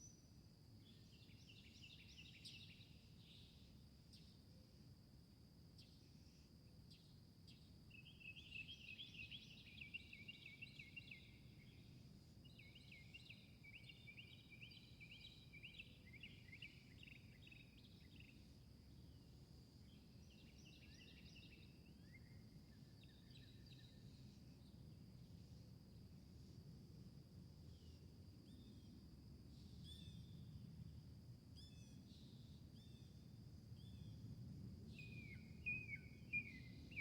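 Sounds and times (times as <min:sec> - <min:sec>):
songbird twittering: 0:34.9 - 0:37.0.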